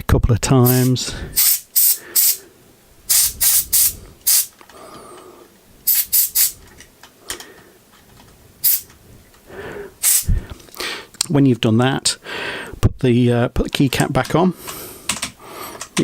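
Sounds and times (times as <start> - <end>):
compressed air hissing blasts: 0.6 - 2.5, 3.1 - 4.5, 5.8 - 6.6, 8.6 - 8.9, 10.0 - 10.4.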